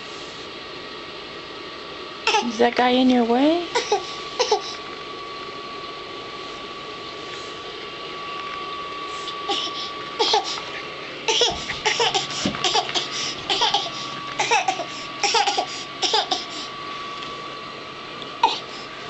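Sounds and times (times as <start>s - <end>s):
baby giggling: 2.3s - 2.5s, 3.8s - 4.8s, 11.3s - 16.4s.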